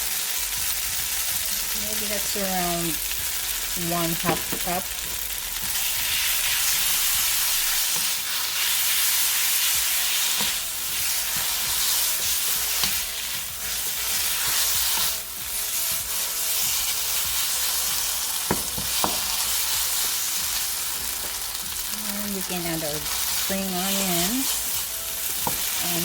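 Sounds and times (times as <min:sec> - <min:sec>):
noodles sizzling in a hot pan: 0:00.0 - 0:26.0
utensil stirring noodles: 0:05.6 - 0:26.0
utensil knocking against pan: 0:18.5 - 0:19.3.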